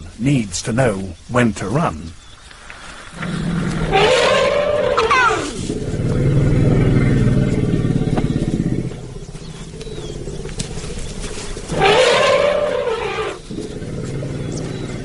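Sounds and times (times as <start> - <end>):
lion growling: 3.1 - 15.0
lion snarling roar: 3.2 - 15.0.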